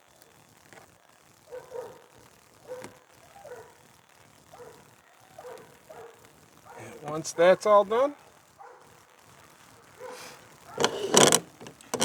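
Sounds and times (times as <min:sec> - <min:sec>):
dog yipping: 0:01.5 - 0:03.8, 0:04.6 - 0:06.9, 0:10.0 - 0:10.8.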